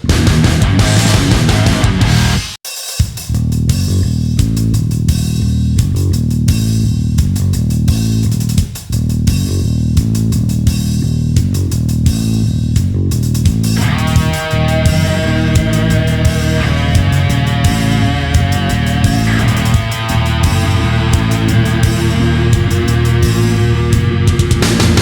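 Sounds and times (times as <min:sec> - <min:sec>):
sustained guitar tone: 0:00.0 - 0:02.4, 0:13.8 - 0:25.0
rock music with drums: 0:00.0 - 0:25.0.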